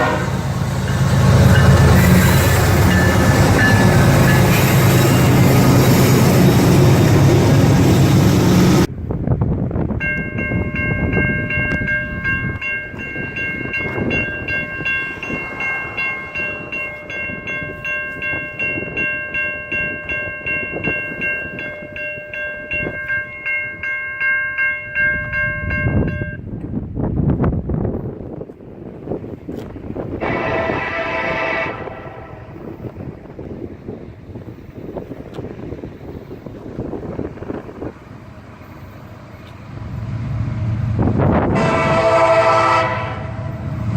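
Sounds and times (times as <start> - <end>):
locomotive horn chord: 0.0 - 5.6, 30.2 - 32.6, 41.3 - 43.5
train passing with heavy rumble: 0.0 - 43.9.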